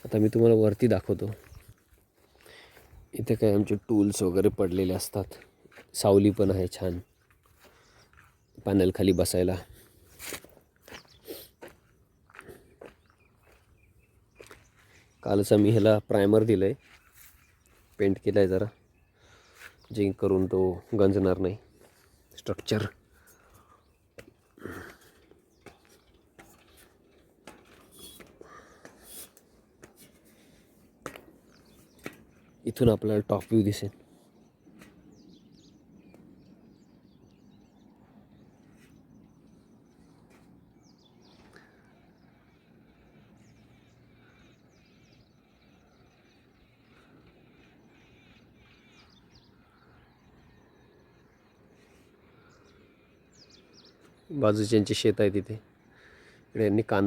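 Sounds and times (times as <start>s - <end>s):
faint high bird chirps: 10.0s - 30.2s.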